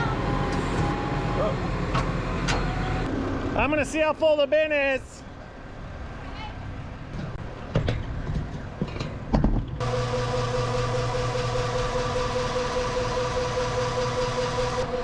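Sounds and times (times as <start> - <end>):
steady machine hum: 9.8 - 15.0.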